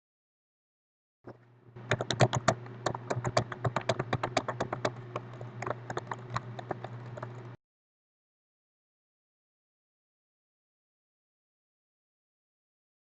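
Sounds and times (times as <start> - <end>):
low electrical hum: 1.3 - 7.6
rapid irregular clicking: 1.3 - 7.6.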